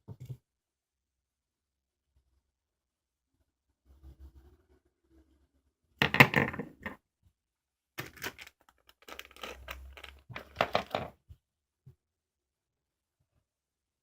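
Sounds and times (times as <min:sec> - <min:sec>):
rustling handling noise with clicks: 0:08.0 - 0:11.1.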